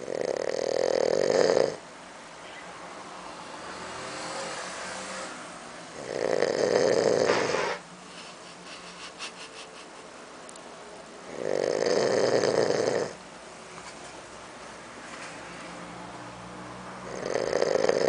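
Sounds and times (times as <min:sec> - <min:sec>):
pet snoring: 0:00.0 - 0:01.8, 0:05.9 - 0:07.8, 0:11.3 - 0:13.2, 0:17.0 - 0:18.0.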